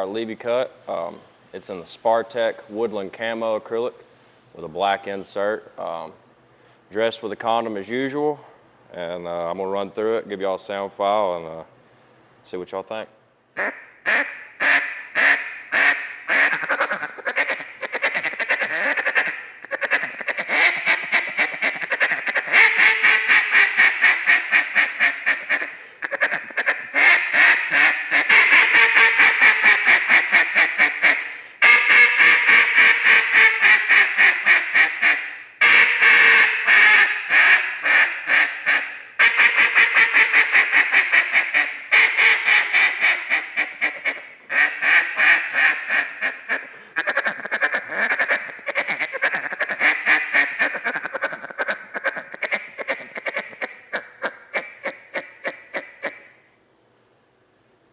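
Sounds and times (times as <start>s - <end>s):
duck call quacks: 13.6s - 56.4s.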